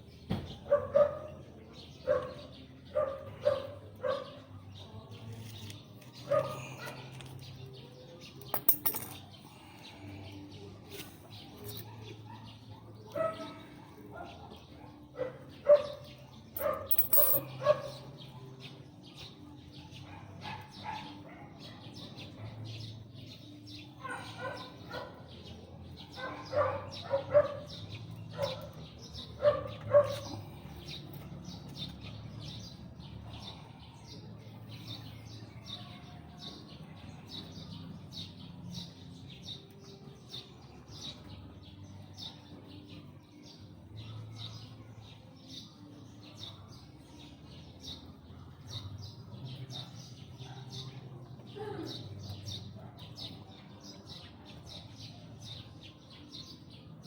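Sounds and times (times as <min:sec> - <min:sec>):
dog barking: 0:00.6 - 0:01.4, 0:02.0 - 0:04.5, 0:06.3 - 0:07.1, 0:11.8 - 0:16.9, 0:17.6 - 0:18.1, 0:20.0 - 0:22.6, 0:24.0 - 0:25.3, 0:26.1 - 0:28.8, 0:29.4 - 0:30.4, 0:49.7 - 0:51.0, 0:52.7 - 0:53.4.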